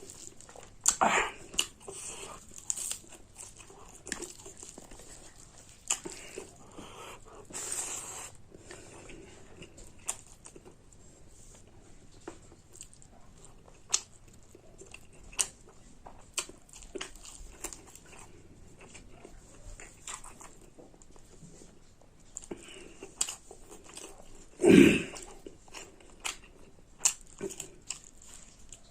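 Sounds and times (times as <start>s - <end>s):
chewing and biting food: 0.0s - 28.9s.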